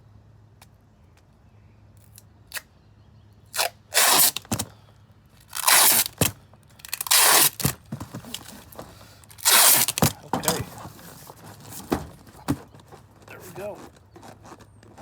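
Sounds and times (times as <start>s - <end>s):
packing tape ripping off roll: 3.5s - 4.7s, 5.4s - 8.7s, 9.3s - 10.6s.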